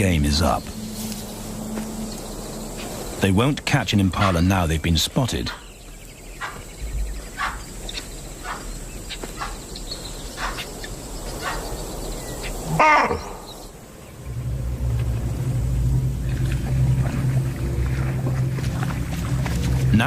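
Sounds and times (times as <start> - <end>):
low background music drone: 0.0 - 7.4, 13.6 - 20.0
animal alarm calls: 4.0 - 4.5, 5.5 - 11.8, 12.4 - 13.6.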